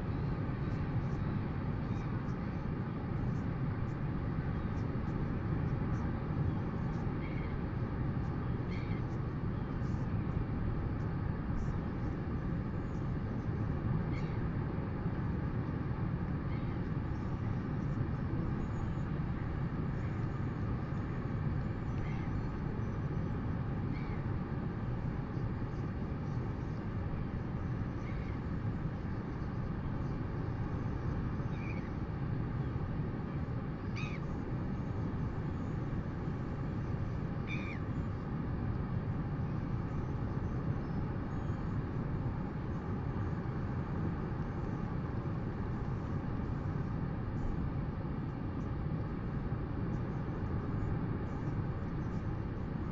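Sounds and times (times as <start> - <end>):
wind rumble on microphone: 0.0 - 52.9.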